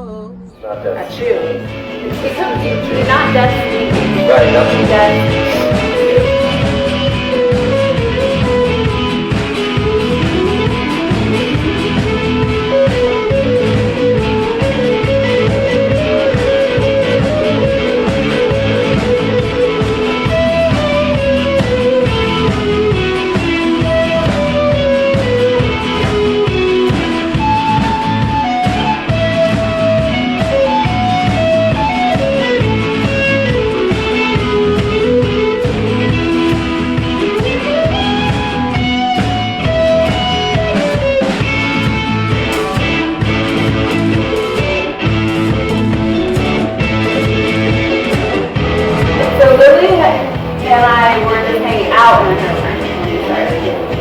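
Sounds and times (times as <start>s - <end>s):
lead electric guitar melody: 0.5s - 54.0s
steady drum beat: 0.8s - 15.1s.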